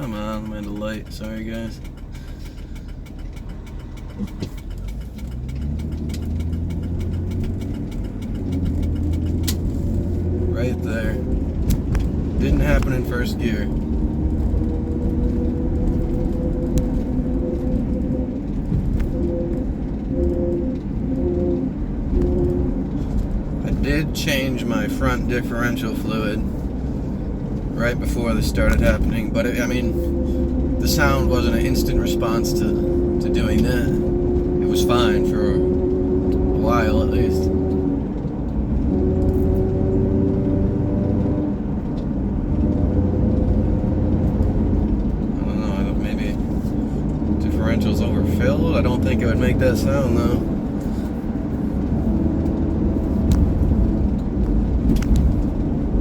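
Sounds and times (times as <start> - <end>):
car drivetrain drone and whine: 0.0 - 56.0
engine and road rumble: 0.0 - 56.0
faint ticks: 0.3 - 10.2
hum changing pitch: 5.5 - 24.2, 46.3 - 56.0.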